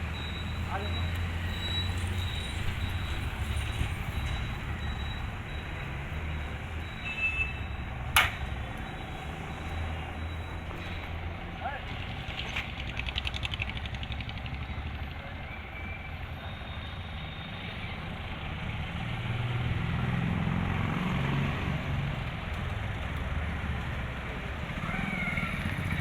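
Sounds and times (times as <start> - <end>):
tractor engine working: 0.0 - 15.8.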